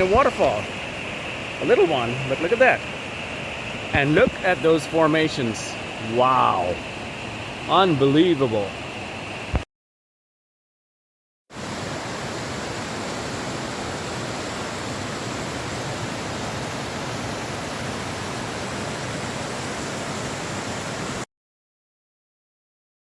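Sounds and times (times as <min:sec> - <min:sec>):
water rushing from small waterfall: 0:00.0 - 0:08.7, 0:11.5 - 0:21.2.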